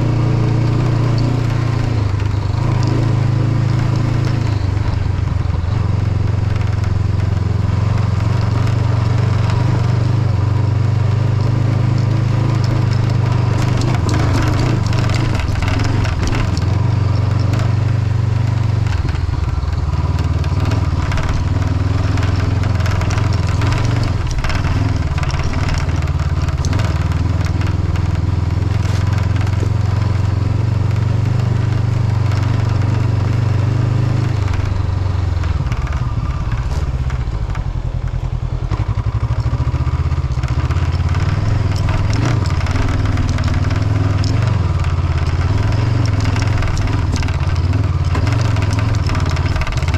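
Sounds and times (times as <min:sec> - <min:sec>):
motorcycle engine running: 0:00.0 - 0:49.9
windshield rattling and clicking: 0:00.1 - 0:49.9
tyres crunching over gravel: 0:11.3 - 0:33.1, 0:33.7 - 0:49.9.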